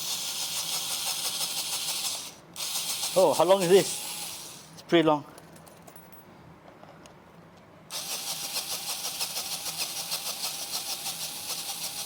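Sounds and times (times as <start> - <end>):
cordless drill motor whirring: 0.0 - 4.8, 7.9 - 12.0.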